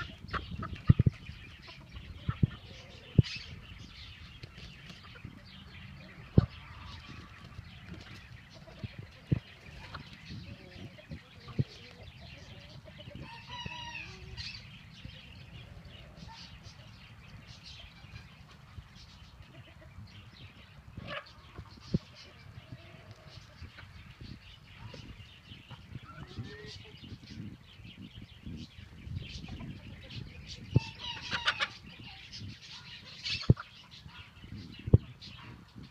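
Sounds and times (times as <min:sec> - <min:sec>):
young chickens clucking: 0:00.0 - 0:35.9
young rooster crowing: 0:13.2 - 0:14.4.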